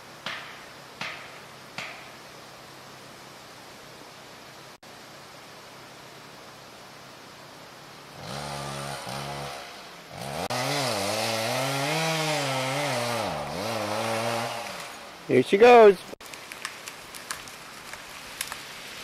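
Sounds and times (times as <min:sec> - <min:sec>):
chainsaw cutting tree: 0:08.2 - 0:15.2.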